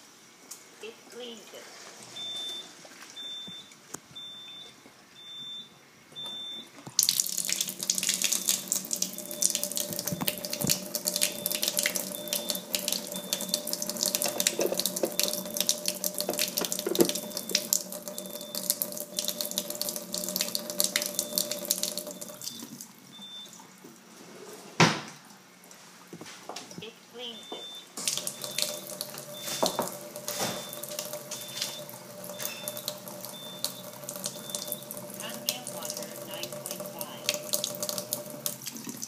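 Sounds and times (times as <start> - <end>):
faint steady hum: 0.0 - 24.3, 25.0 - 39.0
tap water gushing into sink: 6.8 - 24.0, 28.0 - 39.0.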